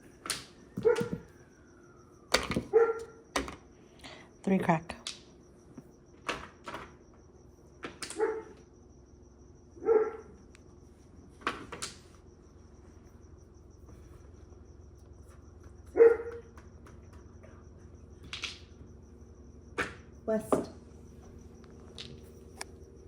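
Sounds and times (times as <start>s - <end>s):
dog barking: 2.7s - 3.2s, 8.2s - 8.6s, 9.8s - 10.3s, 15.9s - 16.5s.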